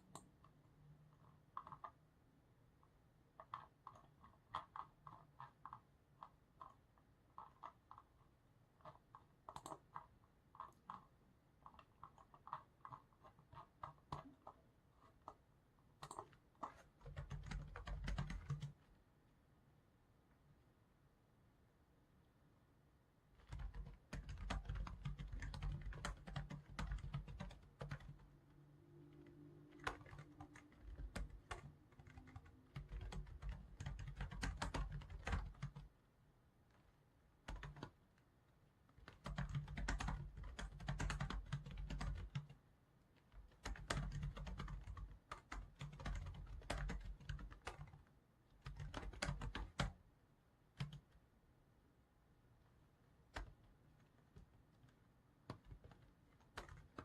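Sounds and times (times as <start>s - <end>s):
typing on computer keyboard: 0.0s - 0.6s, 1.2s - 2.0s, 3.3s - 15.4s, 16.0s - 18.9s, 23.4s - 35.9s, 37.4s - 38.0s, 39.0s - 42.6s, 43.2s - 50.0s, 50.8s - 51.2s, 53.3s - 53.6s, 54.4s - 57.0s.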